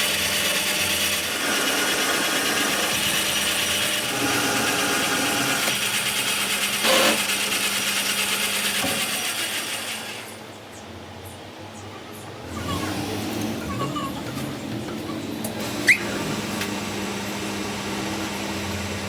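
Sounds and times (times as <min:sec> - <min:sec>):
power tool grinding metal: 0:00.0 - 0:10.4.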